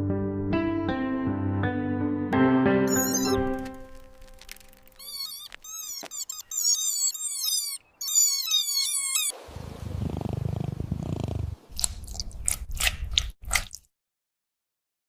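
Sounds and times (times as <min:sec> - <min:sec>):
kittens mewing: 0:02.9 - 0:03.7, 0:04.7 - 0:09.4
cat purring: 0:09.5 - 0:11.6.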